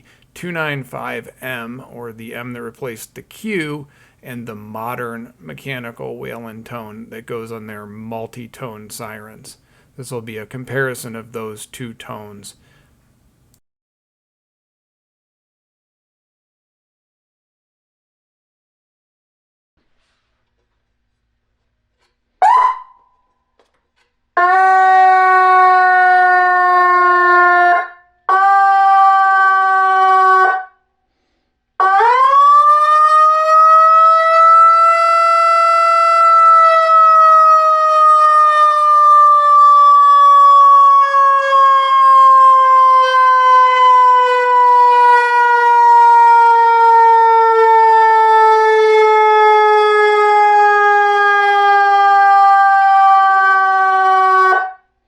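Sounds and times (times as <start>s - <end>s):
electronic siren wailing: 22.4s - 23.0s, 24.4s - 30.7s, 31.8s - 54.8s.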